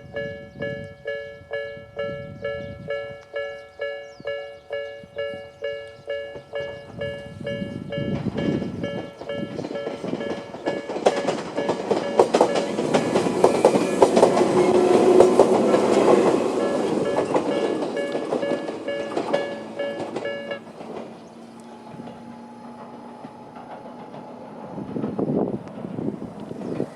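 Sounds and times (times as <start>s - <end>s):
level crossing bell ringing: 0.0s - 13.3s, 15.9s - 20.6s
train wheels clacking over rails: 4.3s - 26.9s.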